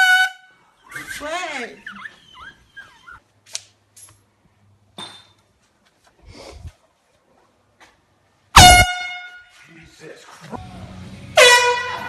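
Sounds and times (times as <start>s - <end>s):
air horn blast: 0.0s - 0.6s, 8.6s - 9.6s, 11.3s - 12.0s.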